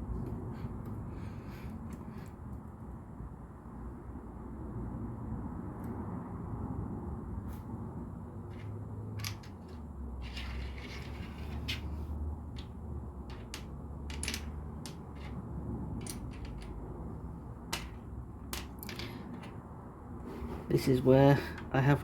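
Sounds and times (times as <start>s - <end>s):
plastic pieces clicking: 8.6s - 11.8s, 12.6s - 15.4s, 16.0s - 16.8s.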